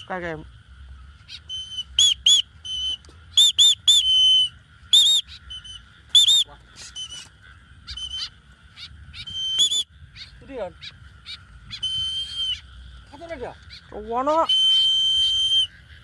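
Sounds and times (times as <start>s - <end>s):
sharp whistled call notes: 1.3s - 7.3s, 7.9s - 8.3s, 9.2s - 9.9s, 11.7s - 12.7s, 14.3s - 15.9s.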